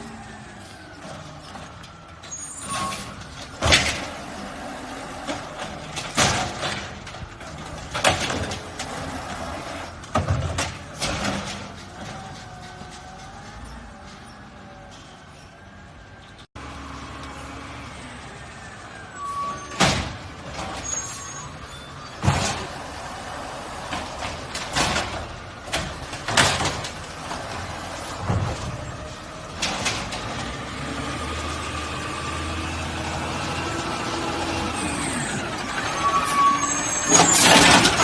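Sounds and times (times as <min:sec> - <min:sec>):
garbage truck engine rumble: 0:00.0 - 0:38.0.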